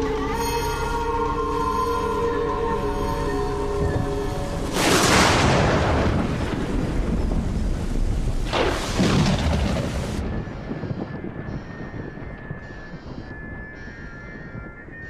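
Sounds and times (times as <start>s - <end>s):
cartoon booming blasts: 4.8s - 7.5s.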